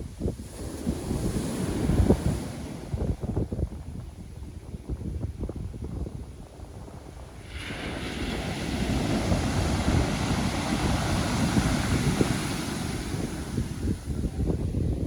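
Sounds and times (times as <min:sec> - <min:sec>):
wind rumble on microphone: 0:00.0 - 0:15.0
wave breaking and washing up: 0:07.2 - 0:15.0.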